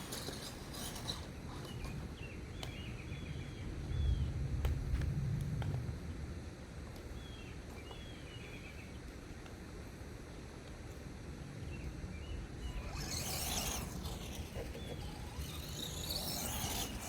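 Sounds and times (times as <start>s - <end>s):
steady low rumble: 3.7s - 6.6s
birds chirping: 12.2s - 17.0s.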